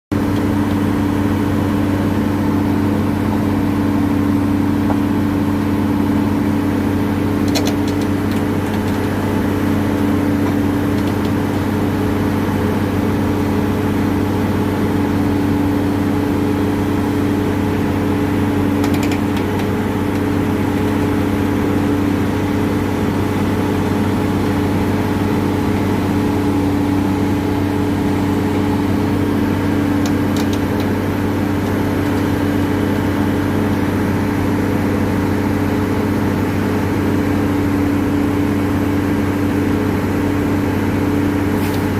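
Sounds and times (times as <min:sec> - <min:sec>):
heavy machine droning: 0:00.1 - 0:41.9.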